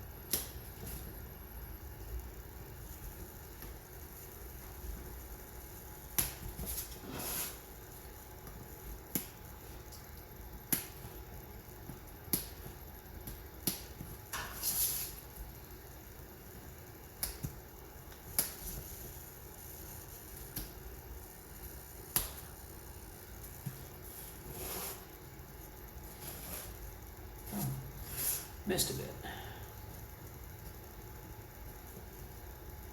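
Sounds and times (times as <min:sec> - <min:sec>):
balsa pieces snapping: 0:06.1 - 0:06.6, 0:08.5 - 0:09.4, 0:10.0 - 0:11.1, 0:11.9 - 0:14.1, 0:17.1 - 0:18.6, 0:20.4 - 0:20.8, 0:22.1 - 0:22.5
soft scrape: 0:07.0 - 0:07.6, 0:24.1 - 0:25.1.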